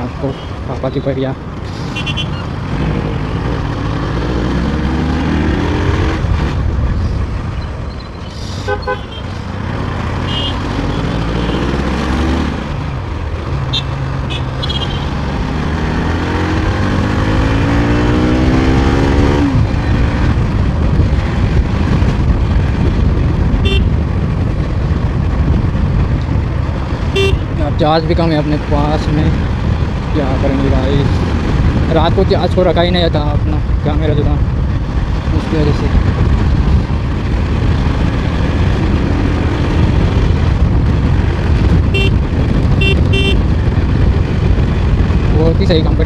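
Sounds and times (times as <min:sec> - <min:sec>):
road and wind rumble: 0:00.0 - 0:46.0
motorcycle engine accelerating: 0:01.6 - 0:08.0, 0:08.8 - 0:27.9, 0:34.1 - 0:45.6
short horn toots: 0:23.6 - 0:23.9, 0:27.2 - 0:27.5, 0:41.9 - 0:42.2, 0:42.8 - 0:43.4.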